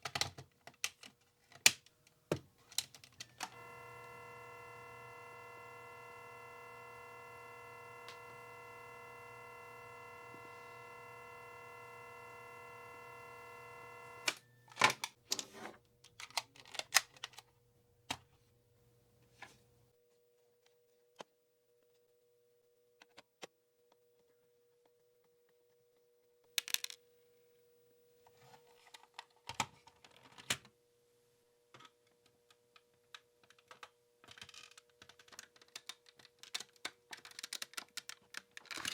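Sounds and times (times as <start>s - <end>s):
held multi-pitch tone: 3.4s - 14.5s
faint steady tone: 3.4s - 14.8s.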